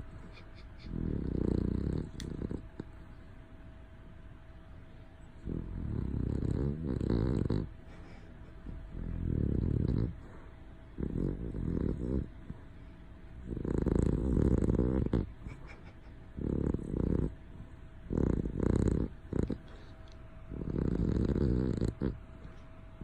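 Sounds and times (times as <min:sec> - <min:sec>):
pet snoring loudly: 0:00.9 - 0:02.6, 0:05.4 - 0:07.7, 0:08.9 - 0:10.2, 0:11.0 - 0:12.3, 0:13.4 - 0:15.3, 0:16.4 - 0:17.4, 0:18.1 - 0:19.8, 0:20.5 - 0:22.2.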